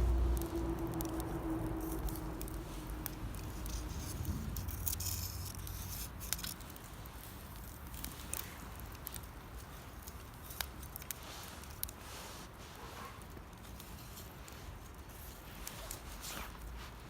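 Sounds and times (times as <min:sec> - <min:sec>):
campfire crackling and popping: 0:00.0 - 0:12.1
fire hissing: 0:00.0 - 0:17.0.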